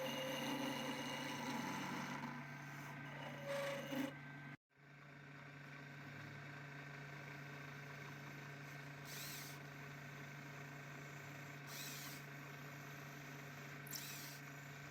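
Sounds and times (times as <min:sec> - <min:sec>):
tool rasping on turning piece: 0:00.0 - 0:04.2
electric motor humming: 0:00.0 - 0:04.3, 0:11.7 - 0:12.2, 0:13.9 - 0:14.4.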